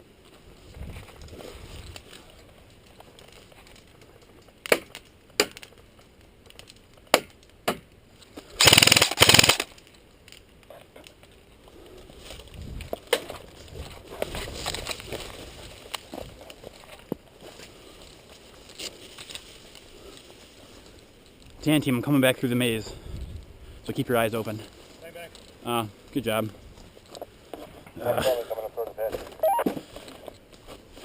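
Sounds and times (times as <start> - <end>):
rustling and shuffling: 0.0 - 7.1, 9.7 - 31.0
airsoft gun shots: 8.6 - 9.7.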